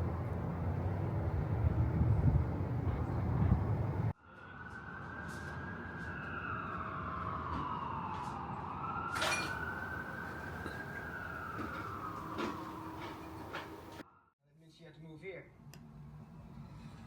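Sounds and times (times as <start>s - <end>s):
low rumble of wind or traffic: 0.0s - 4.2s, 4.9s - 14.0s
siren wailing: 4.2s - 14.0s.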